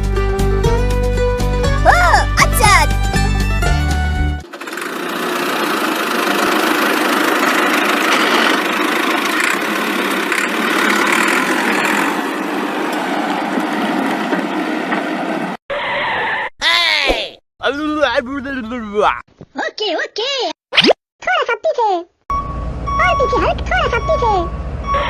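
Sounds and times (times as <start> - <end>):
vehicle engine running: 3.2 - 15.6.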